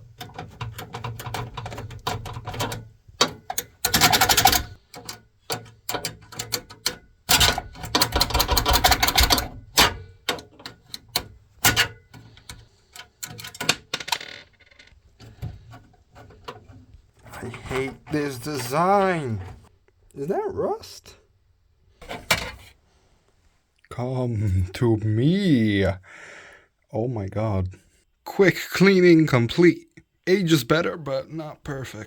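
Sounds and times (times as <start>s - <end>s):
metal and plastic parts clacking: 0.0s - 19.7s, 22.0s - 22.8s.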